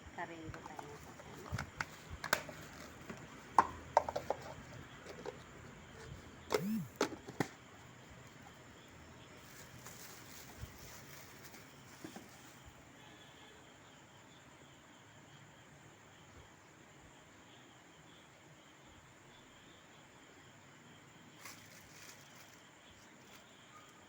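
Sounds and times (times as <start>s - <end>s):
plastic box clicking and knocking: 0.6s - 4.5s.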